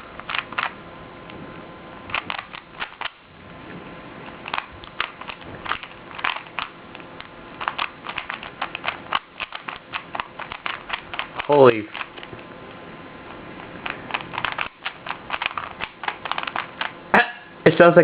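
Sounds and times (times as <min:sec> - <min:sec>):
puzzle cube turning clicks: 0:00.2 - 0:00.8, 0:02.1 - 0:03.2, 0:04.4 - 0:12.4, 0:13.8 - 0:17.0.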